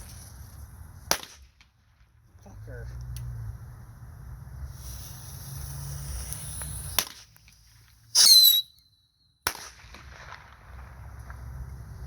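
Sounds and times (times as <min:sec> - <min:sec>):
firecrackers cracking: 0:01.0 - 0:02.2, 0:04.8 - 0:08.8, 0:09.4 - 0:12.0
loud firecracker bang: 0:09.4 - 0:11.5.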